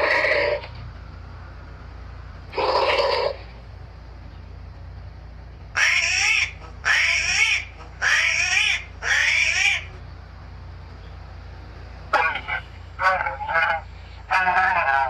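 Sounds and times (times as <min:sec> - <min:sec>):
animal calling: 0:00.0 - 0:00.8, 0:02.5 - 0:03.7, 0:05.7 - 0:10.1, 0:12.1 - 0:15.0.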